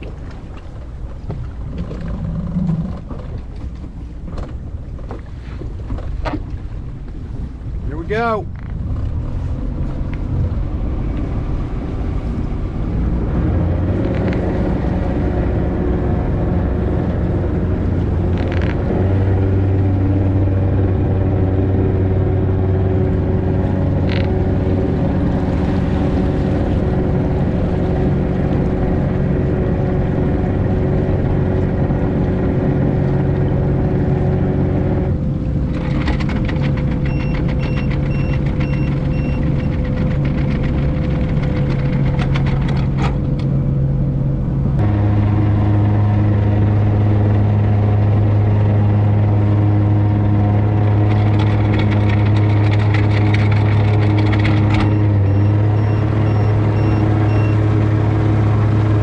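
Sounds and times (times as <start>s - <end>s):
boat engine rumbling: 0.0s - 59.0s
short beeps: 37.1s - 39.7s, 54.8s - 57.6s.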